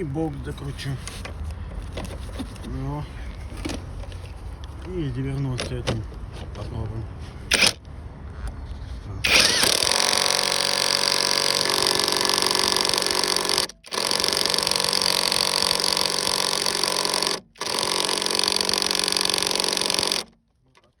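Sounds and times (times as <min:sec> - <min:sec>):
power tool running: 0:07.5 - 0:07.8, 0:09.2 - 0:20.3.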